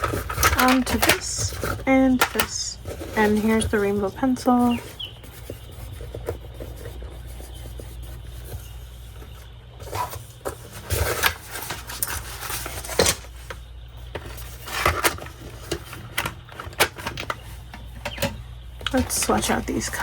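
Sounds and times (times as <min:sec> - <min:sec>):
art supplies clattering on a table: 0:00.0 - 0:04.8
low steady hum: 0:00.0 - 0:20.0.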